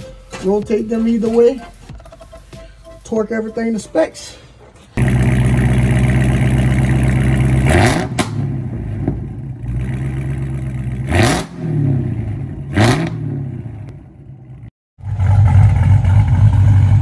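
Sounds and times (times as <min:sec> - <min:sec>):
car engine idling and revving: 0:05.0 - 0:17.0.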